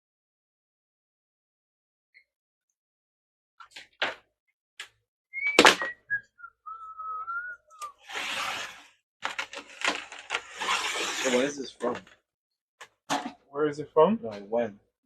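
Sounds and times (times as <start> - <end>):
person whistling: 5.4 - 8.0.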